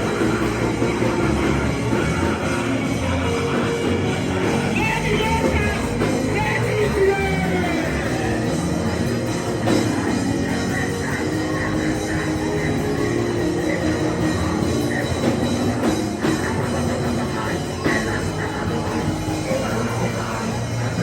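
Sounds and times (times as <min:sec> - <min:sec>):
live church band music: 0:00.0 - 0:21.0
voices singing or crying out: 0:00.0 - 0:21.0.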